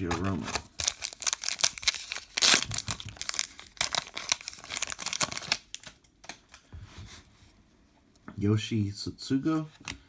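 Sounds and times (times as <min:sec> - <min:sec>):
wrapper crinkling and tearing: 0:00.0 - 0:06.0.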